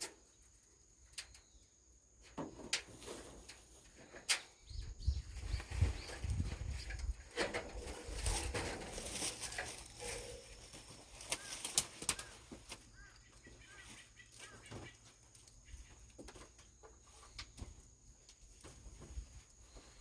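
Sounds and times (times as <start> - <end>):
birds chirping: 4.0 - 7.2, 7.8 - 17.7
rustling: 5.2 - 17.8.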